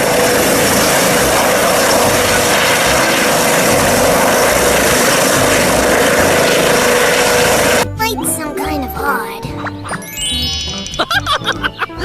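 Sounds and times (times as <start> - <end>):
helicopter engine and rotor: 0.0 - 7.8.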